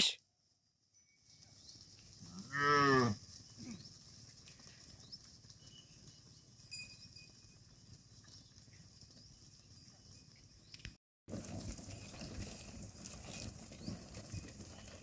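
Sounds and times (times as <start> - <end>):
cow mooing: 2.3 - 3.2.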